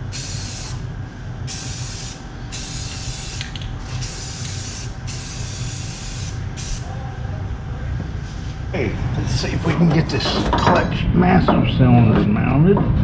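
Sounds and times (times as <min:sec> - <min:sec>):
low hum: 0:00.0 - 0:13.0
pressurized spray hissing: 0:00.1 - 0:00.8, 0:01.5 - 0:06.9.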